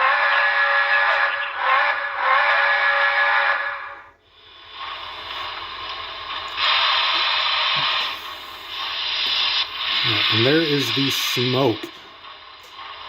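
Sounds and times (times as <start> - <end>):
multi-tone steam whistle: 0.0 - 4.1
hiss of steam: 4.4 - 13.0.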